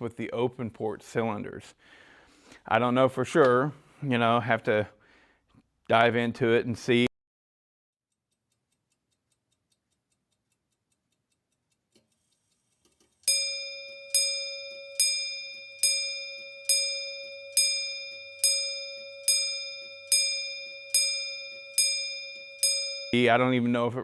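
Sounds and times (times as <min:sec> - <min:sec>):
ringing metallic strikes: 0:13.3 - 0:23.7.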